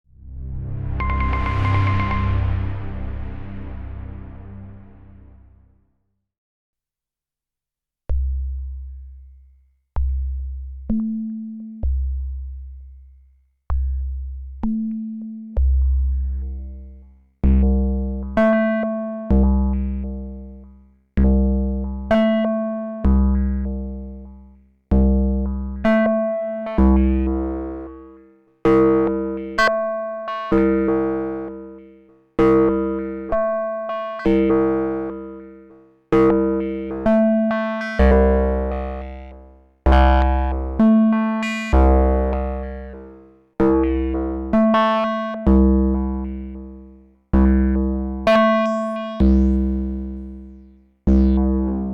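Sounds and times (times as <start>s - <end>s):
deep synth bass: 0.1s - 5.7s, 15.6s - 18.7s, 19.3s - 22.4s, 23.0s - 29.6s, 34.1s - 51.9s
synthesizer sequenced notes: 0.2s - 5.4s, 25.8s - 51.9s.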